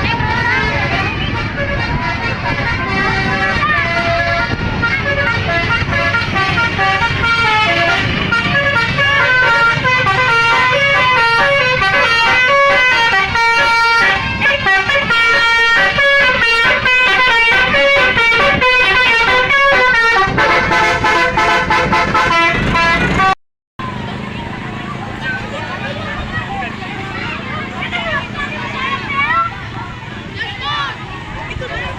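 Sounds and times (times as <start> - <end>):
musical bus air horn melody: 0.0 - 23.4.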